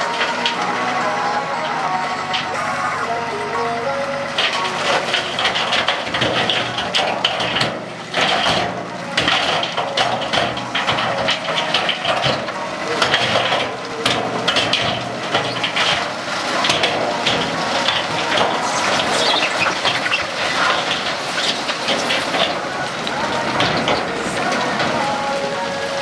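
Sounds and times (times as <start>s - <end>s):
hand tools knocking and scraping: 0.0s - 26.0s.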